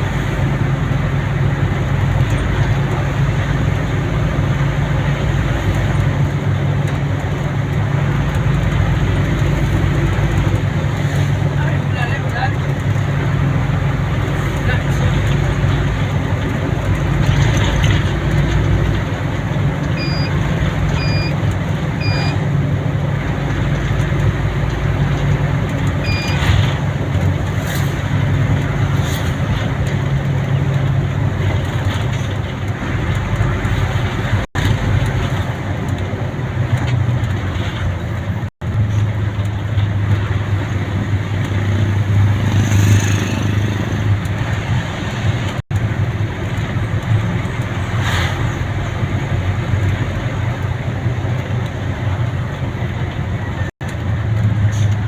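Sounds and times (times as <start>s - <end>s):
vehicle engine and road noise: 0.0s - 55.0s
short high beeps: 20.0s - 20.3s, 21.0s - 21.4s, 22.0s - 22.4s, 26.0s - 26.4s.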